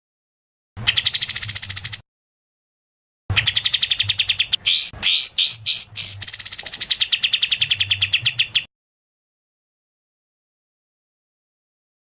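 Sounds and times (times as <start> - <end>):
songbird rapid trill: 0.8 - 2.0, 3.4 - 8.7.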